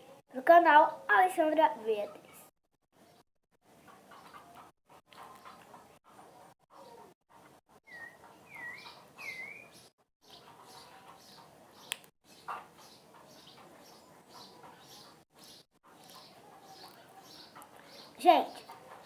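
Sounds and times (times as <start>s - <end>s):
swooping bird calls: 7.9s - 19.0s.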